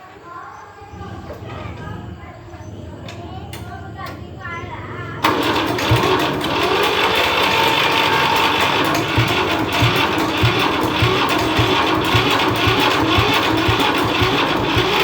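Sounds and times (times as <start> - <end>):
tractor engine clattering: 5.2 - 15.0.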